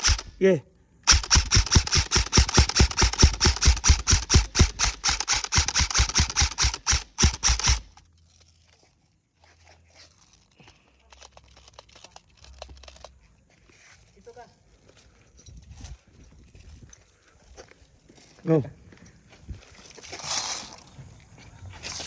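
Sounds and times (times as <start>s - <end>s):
airsoft rifle rapid fire: 0.0s - 0.4s, 1.1s - 8.0s.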